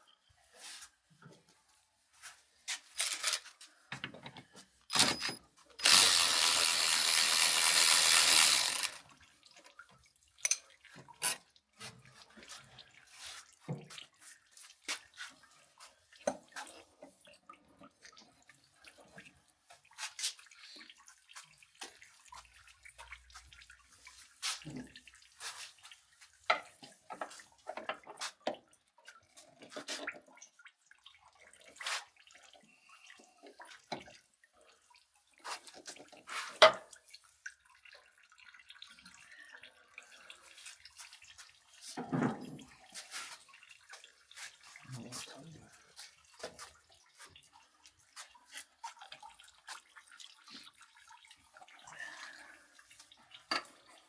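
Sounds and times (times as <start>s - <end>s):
tools and metal parts clinking: 3.0s - 3.5s, 4.9s - 9.0s
power tool running: 4.9s - 9.0s.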